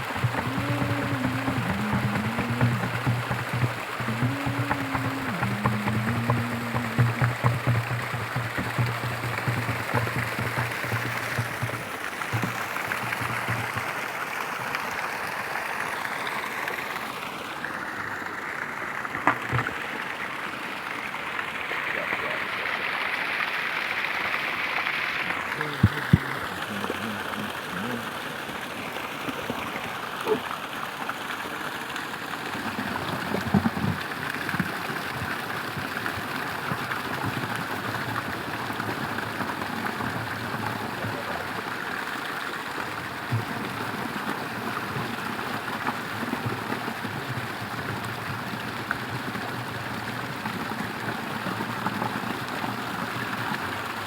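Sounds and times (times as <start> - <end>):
running water rushing: 0.0 - 54.0
soft knocks: 0.1 - 13.9.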